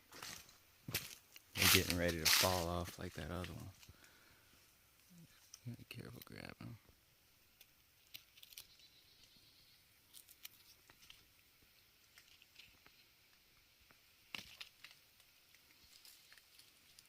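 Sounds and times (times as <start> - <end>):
leaves and twigs crackling: 0.0 - 6.5, 7.4 - 17.0.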